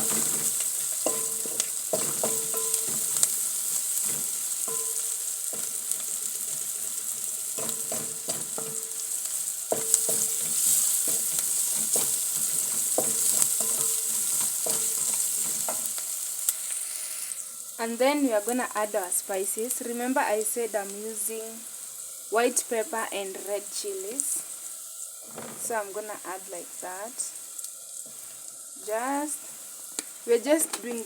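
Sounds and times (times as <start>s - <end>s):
spoon knocking and scraping pot: 0.0s - 16.0s
onions sizzling in oil: 0.0s - 31.0s.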